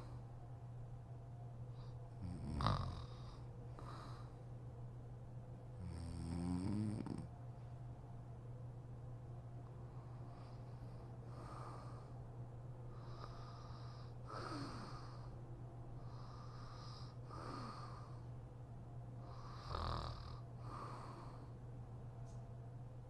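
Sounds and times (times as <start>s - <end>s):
steady low hum: 0.0s - 23.0s
woman snoring: 2.2s - 3.3s, 5.8s - 7.3s, 14.2s - 15.3s, 16.4s - 18.2s, 19.4s - 21.5s
snort: 2.2s - 4.2s, 5.8s - 7.3s, 13.0s - 15.3s, 16.2s - 18.2s, 19.3s - 21.5s.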